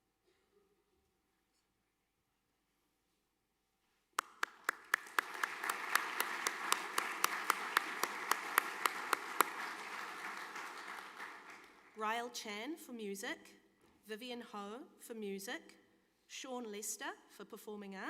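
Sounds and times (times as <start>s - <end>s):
audience applauding: 4.2s - 12.0s.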